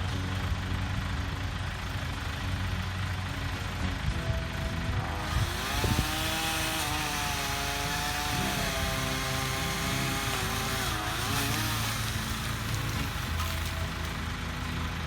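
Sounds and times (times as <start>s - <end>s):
chainsaw engine cutting branch: 5.2s - 14.2s.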